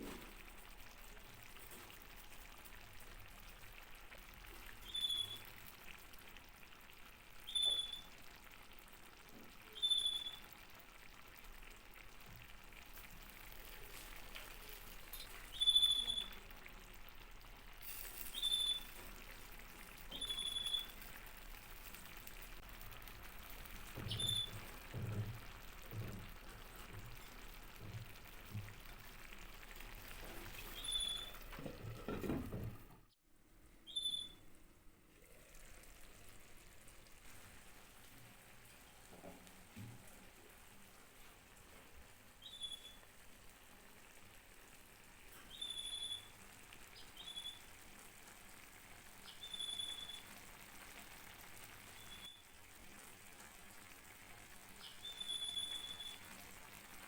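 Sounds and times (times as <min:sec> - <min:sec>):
food sizzling and bubbling: 0:00.0 - 0:57.0
short high chirps: 0:18.3 - 0:18.9, 0:33.9 - 0:34.4.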